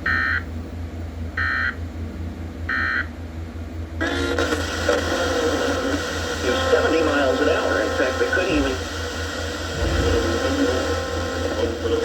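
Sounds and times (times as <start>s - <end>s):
steady low hum: 0.0s - 12.0s
radio station audio: 4.0s - 12.0s.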